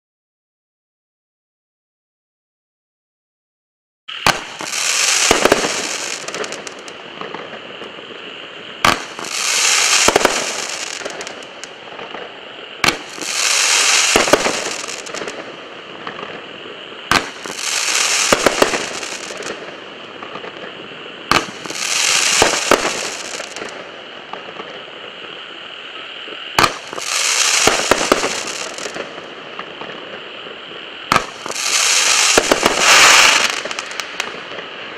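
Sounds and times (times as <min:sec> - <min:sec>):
hissing firework burst: 0:04.1 - 0:34.9
firework launch thump: 0:04.2 - 0:06.6, 0:08.8 - 0:09.4, 0:12.8 - 0:13.4, 0:17.1 - 0:17.6, 0:21.3 - 0:23.7, 0:26.6 - 0:29.0, 0:31.1 - 0:34.3.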